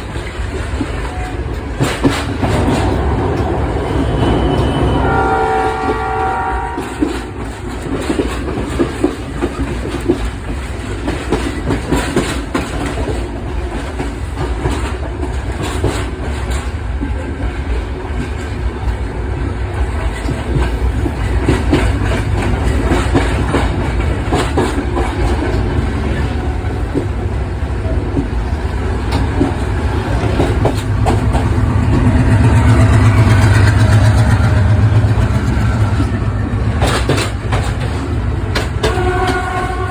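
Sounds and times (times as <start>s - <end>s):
train rumbling on rails: 0.0s - 39.9s
train horn chord: 4.0s - 7.4s, 38.8s - 39.9s
wheels clicking over rail joints: 6.9s - 39.9s.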